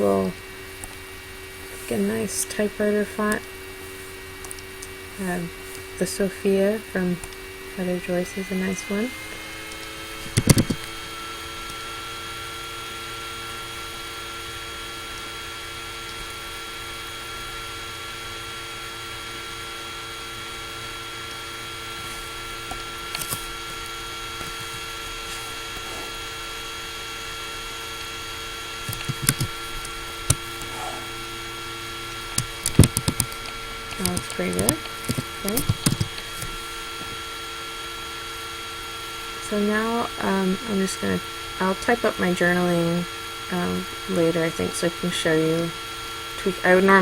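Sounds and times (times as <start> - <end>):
laptop fan whining: 0.0 - 47.0
sharp clicks: 9.7 - 11.0, 28.8 - 30.9, 32.2 - 36.6.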